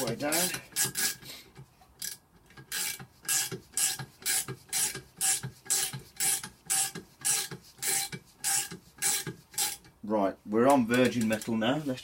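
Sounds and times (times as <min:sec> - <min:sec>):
ratchet handle rasping: 0:00.0 - 0:01.3, 0:02.0 - 0:09.9.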